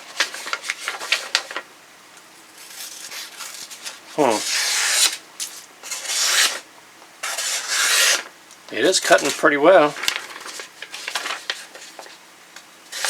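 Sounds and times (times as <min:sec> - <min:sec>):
blade slicing paper: 0:02.6 - 0:06.6, 0:07.2 - 0:08.3.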